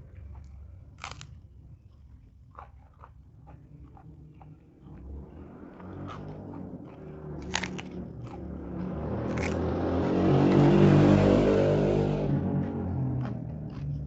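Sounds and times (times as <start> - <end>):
crunchy biting and chewing: 0.0 - 14.0
passing vehicle engine hum: 4.7 - 14.0.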